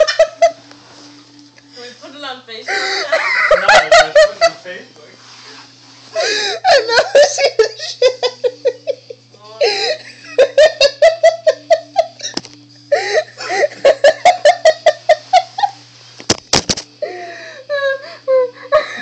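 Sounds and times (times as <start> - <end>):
person laughing hard: 0.0 - 0.6, 6.2 - 15.8.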